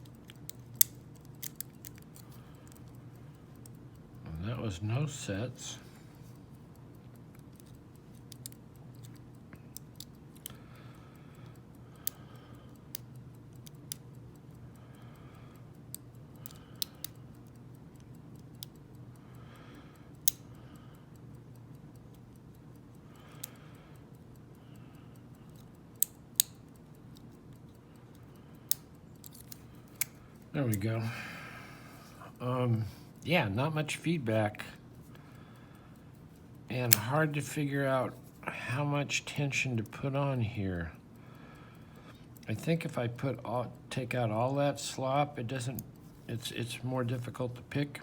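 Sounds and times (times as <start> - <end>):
lock pick clicking in padlock: 0.0 - 2.8, 28.7 - 30.2.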